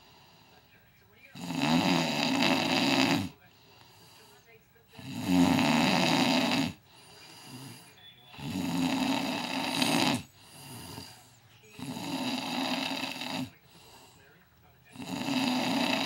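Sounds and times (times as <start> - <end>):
quiet breath out: 0.0 - 0.9, 3.3 - 5.0, 6.7 - 8.4, 9.8 - 15.0
man snoring: 1.3 - 4.3, 5.0 - 14.2, 14.9 - 16.0.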